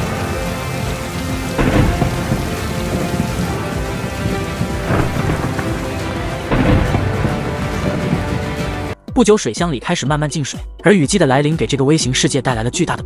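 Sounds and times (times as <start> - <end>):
heavy rain: 0.0 - 9.0
thunder rolling: 0.0 - 9.0.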